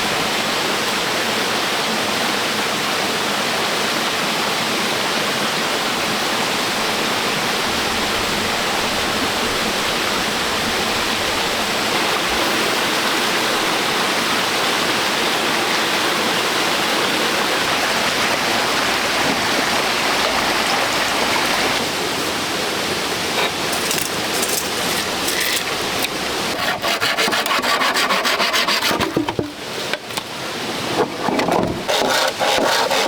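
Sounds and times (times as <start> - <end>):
rushing water: 0.0 - 33.0
hand tool rasping on wood: 23.4 - 29.4, 31.8 - 33.0.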